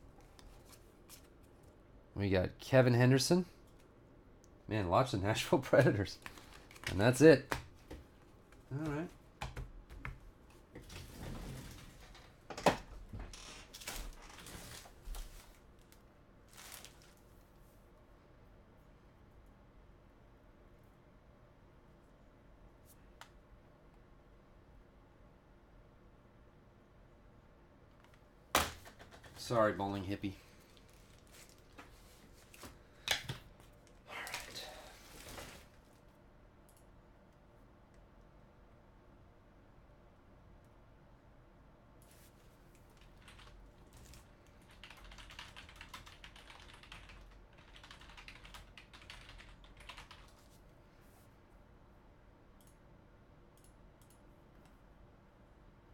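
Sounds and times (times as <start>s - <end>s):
cards and packaging rustling: 5.9s - 7.2s, 13.8s - 17.3s.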